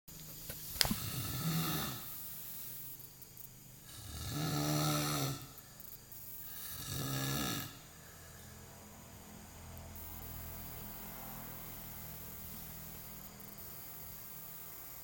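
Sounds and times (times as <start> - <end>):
loud snoring: 0.9 - 2.2, 3.8 - 5.6, 6.4 - 8.2
quiet breathing: 3.8 - 9.2.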